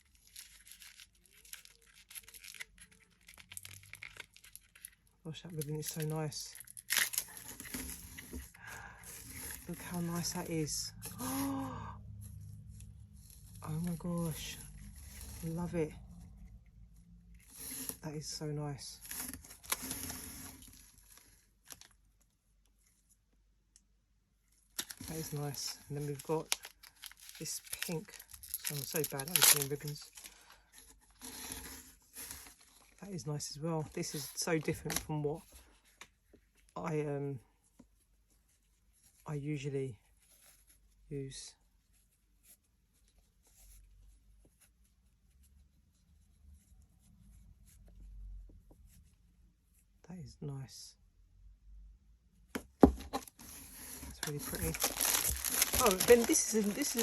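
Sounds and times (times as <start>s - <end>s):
packaging rustling and crinkling: 0.0s - 11.7s, 18.9s - 22.0s, 24.6s - 33.0s, 52.8s - 57.0s.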